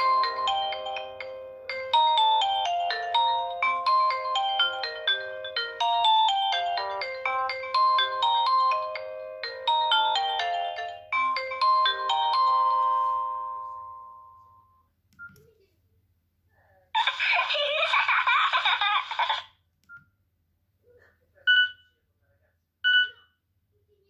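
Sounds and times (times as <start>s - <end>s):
polyphonic ringtone melody: 0.0s - 14.8s.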